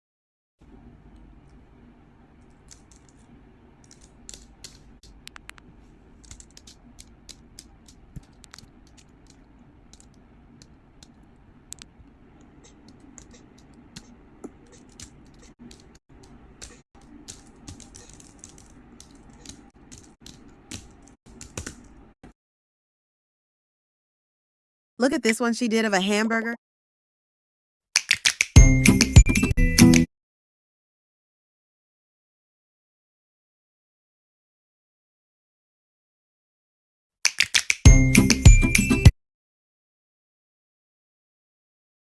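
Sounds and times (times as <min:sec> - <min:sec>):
low steady hum: 0:00.6 - 0:21.2.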